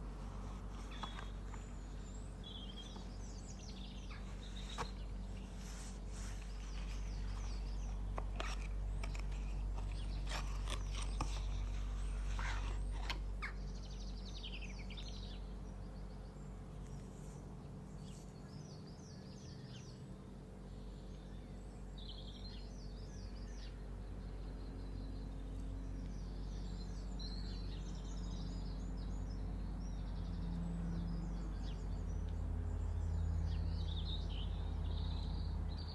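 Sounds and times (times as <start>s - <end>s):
small birds chirping: 0.0s - 35.9s
steady low hum: 0.0s - 35.9s
clicks and rustles: 4.3s - 13.3s.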